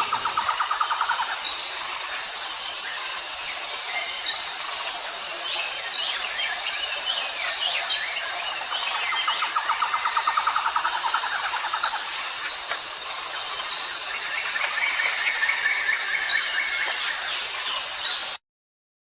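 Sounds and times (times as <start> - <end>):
birds chirping: 0.0 - 1.8
rapid bird trill: 0.0 - 1.8
insects droning: 0.0 - 18.4.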